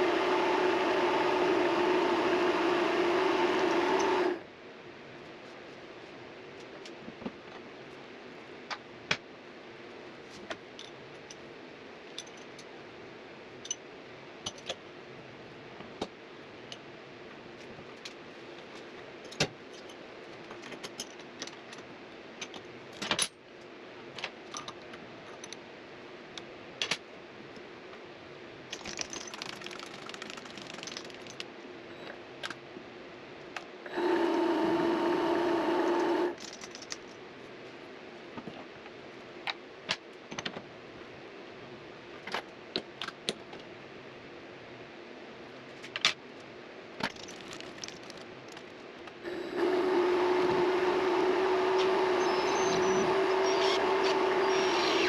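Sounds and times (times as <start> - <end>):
lathe motor running: 0.0 - 4.4, 33.9 - 36.4, 49.3 - 55.0.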